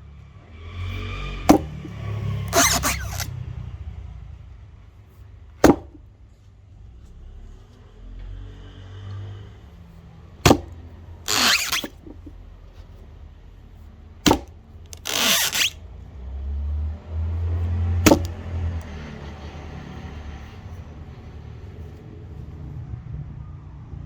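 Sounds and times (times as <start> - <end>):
axe chopping wood: 1.5 - 3.3, 5.6 - 6.0, 10.5 - 12.3, 14.2 - 15.7, 17.9 - 18.8
wood splintering: 1.5 - 3.3, 5.6 - 6.0, 10.5 - 12.3, 14.2 - 15.8, 18.0 - 18.5.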